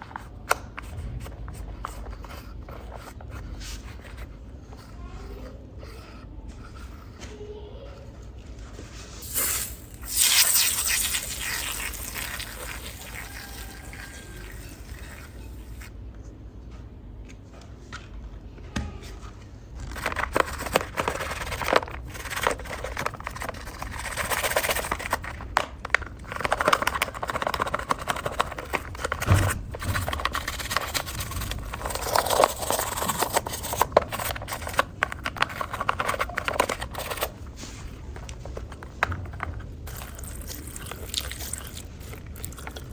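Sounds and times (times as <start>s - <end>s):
scrubbing and rubbing a model car: 1.3s - 15.8s, 19.8s - 38.8s.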